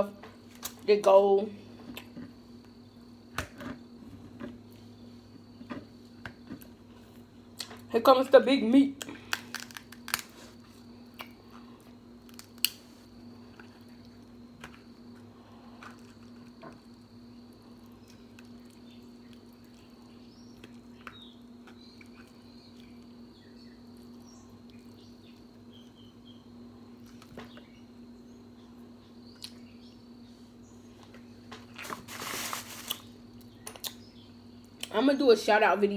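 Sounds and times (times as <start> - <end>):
steady low hum: 0.0 - 35.9
soft chewing: 9.0 - 14.4, 15.0 - 26.0.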